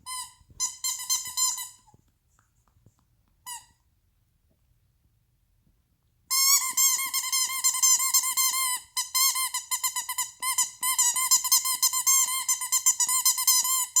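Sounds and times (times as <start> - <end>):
squeaky dog toy squeaking: 0.0 - 1.9, 3.4 - 3.8, 6.3 - 14.0.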